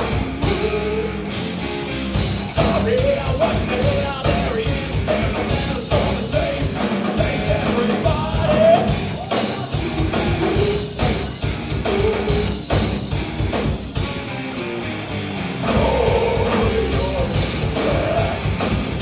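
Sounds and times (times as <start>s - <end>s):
person singing: 0.0s - 1.3s, 15.6s - 18.7s
bass guitar: 0.0s - 19.0s
drum kit: 0.0s - 19.0s
electric guitar: 0.0s - 19.0s.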